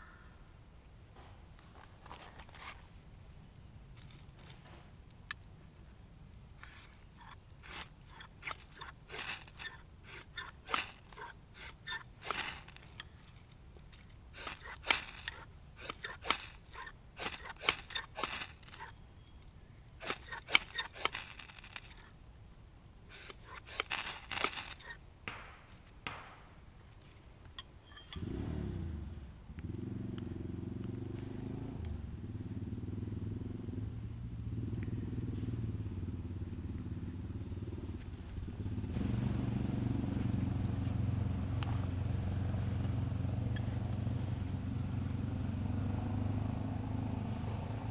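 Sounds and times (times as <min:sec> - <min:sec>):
scraping snipping and clicking: 0:04.0 - 0:05.5, 0:06.3 - 0:22.2, 0:23.1 - 0:26.2.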